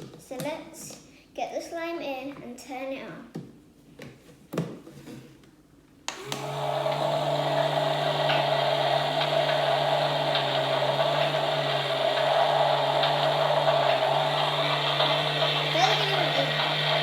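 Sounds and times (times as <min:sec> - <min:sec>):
small electric motor humming: 0:06.1 - 0:17.0.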